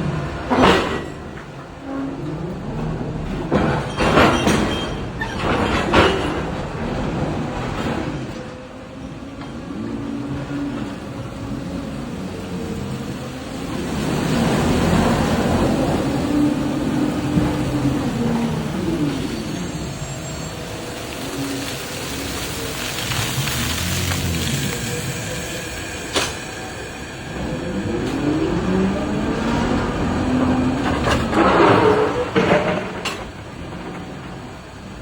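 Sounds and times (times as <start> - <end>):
rush of falling ore: 2.6 - 35.0
electric drives whining: 9.8 - 31.5.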